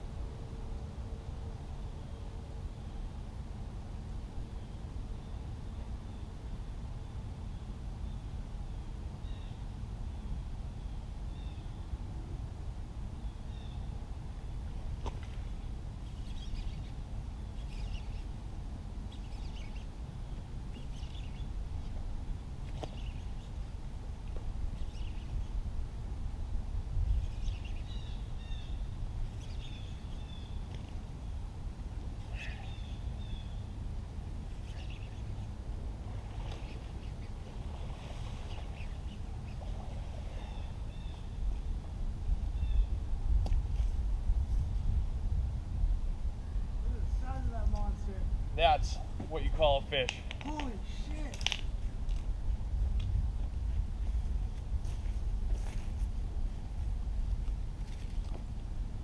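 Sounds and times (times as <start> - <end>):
wind rumble on microphone: 0.0 - 59.0
bird chirps: 16.0 - 18.3, 19.1 - 20.0, 24.8 - 25.6
bird calling: 32.2 - 33.7, 34.5 - 35.6.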